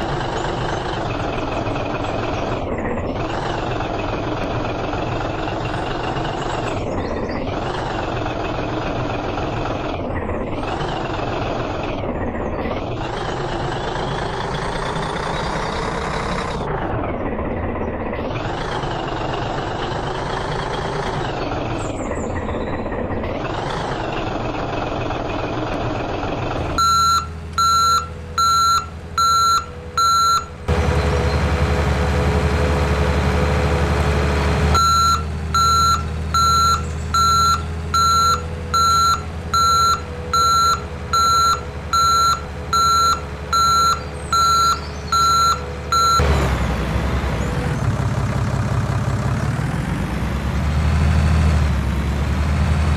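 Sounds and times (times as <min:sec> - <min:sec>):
heavy vehicle engine revving: 0:00.0 - 0:52.9
reversing alarm beeping: 0:26.8 - 0:30.6, 0:34.7 - 0:46.3.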